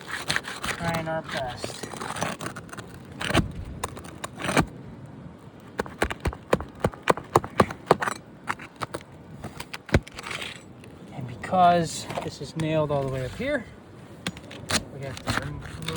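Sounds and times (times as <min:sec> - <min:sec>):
roof shingles cracking and scraping: 0:00.0 - 0:04.7, 0:05.4 - 0:11.4.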